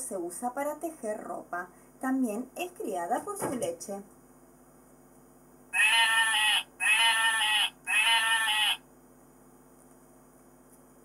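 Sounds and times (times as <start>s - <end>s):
sheep bleating: 5.8s - 8.8s.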